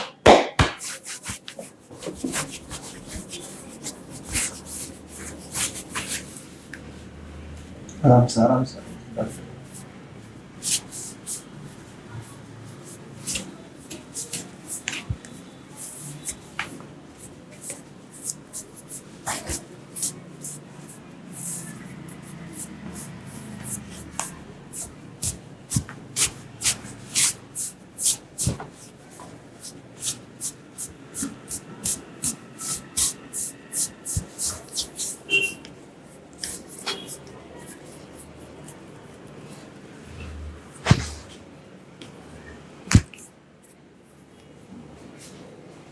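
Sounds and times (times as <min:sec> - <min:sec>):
hands slapping and tapping skin: 0:00.0 - 0:04.7, 0:42.9 - 0:43.3.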